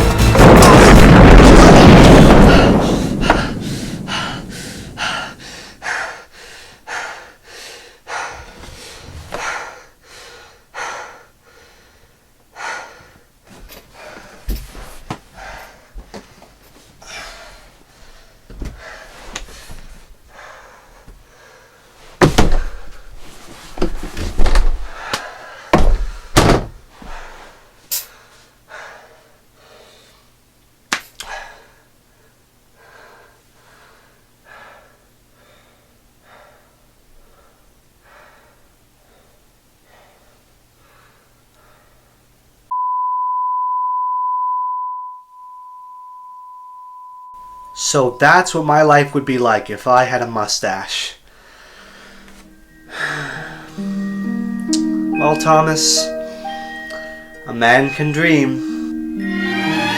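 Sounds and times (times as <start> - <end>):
thumps and bangs: 0.0 - 5.4, 22.2 - 22.8, 25.7 - 26.8
steady high beep tone: 42.7 - 49.6.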